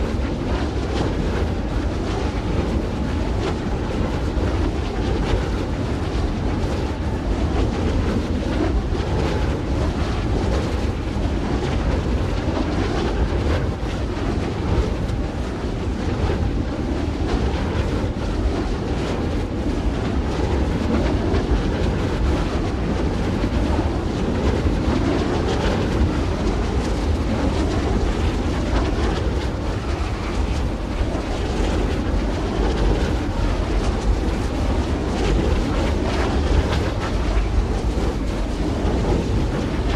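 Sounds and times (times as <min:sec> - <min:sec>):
wind noise with low rumble: 0:00.0 - 0:39.9.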